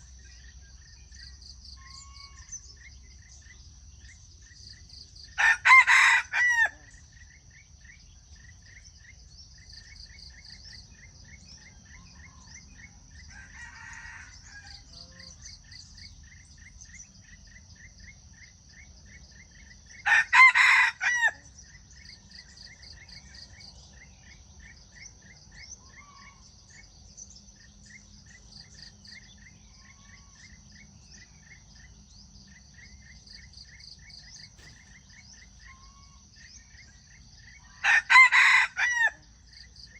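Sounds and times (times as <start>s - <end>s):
insects chirping: 0.0s - 39.9s
rooster crowing: 5.4s - 6.9s, 13.3s - 15.3s, 20.0s - 21.5s, 37.8s - 39.3s.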